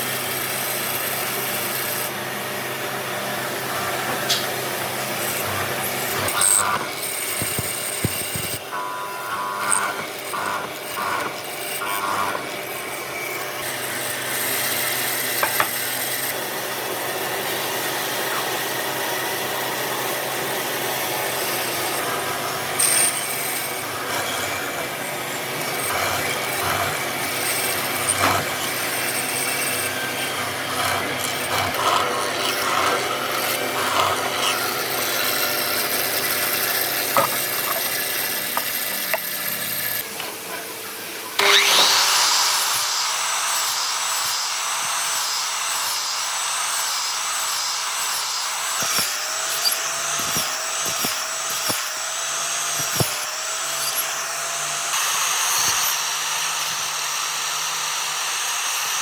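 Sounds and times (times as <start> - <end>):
power tool grinding wood: 0.0 - 59.0.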